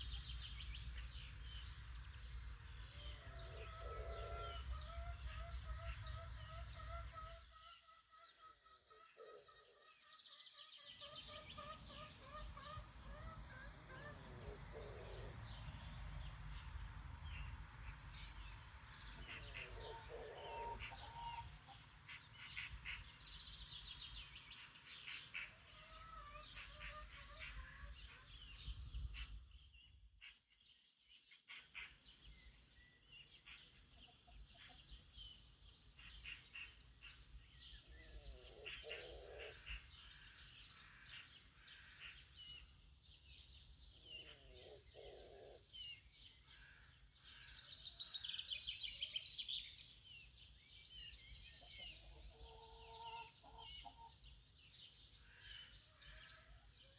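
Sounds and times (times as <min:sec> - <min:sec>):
songbirds chirping: 0:00.0 - 0:56.9
chickens calling: 0:02.7 - 0:10.0, 0:10.8 - 0:17.6, 0:18.3 - 0:29.5, 0:33.0 - 0:42.9, 0:43.9 - 0:45.8, 0:51.3 - 0:56.9.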